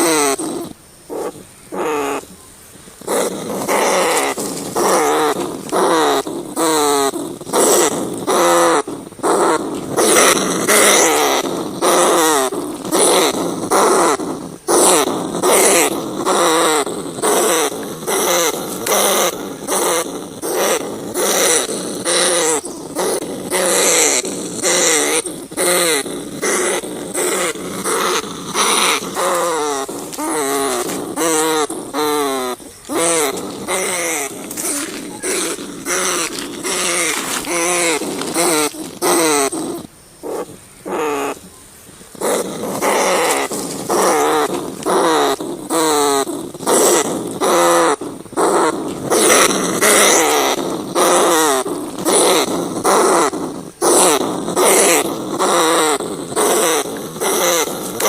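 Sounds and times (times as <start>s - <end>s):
rats squealing: 0.0s - 2.3s, 3.0s - 41.5s, 42.1s - 58.0s.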